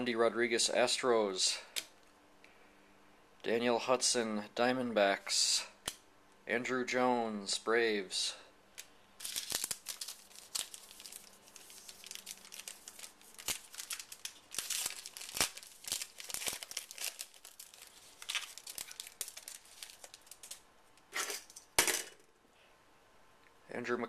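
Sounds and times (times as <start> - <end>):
wrapper crinkling and tearing: 9.2 - 20.7.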